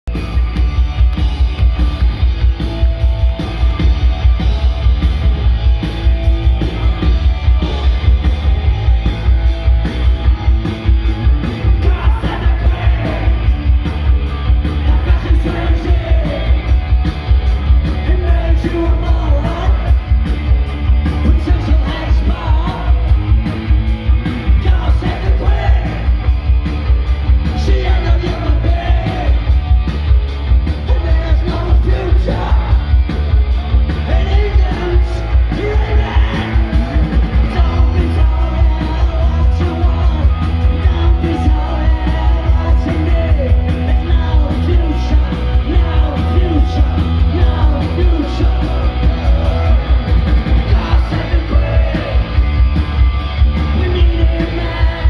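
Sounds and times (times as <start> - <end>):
distorted electric guitars and bass: 0.0 - 55.0
person shouting lead vocal: 11.6 - 13.5, 34.1 - 49.9.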